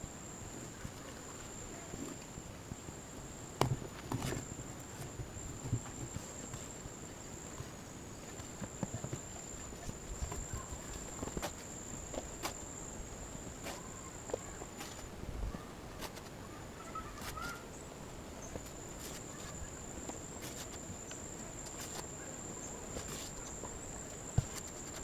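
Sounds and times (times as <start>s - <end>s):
light rustling: 18.4s - 25.0s.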